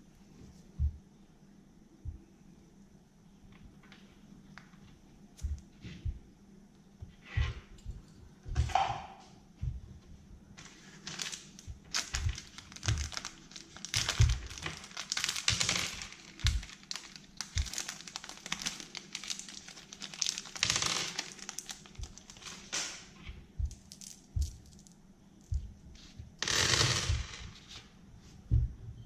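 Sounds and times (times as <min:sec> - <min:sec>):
wrappers crinkling and rustling: 0:10.6 - 0:22.8.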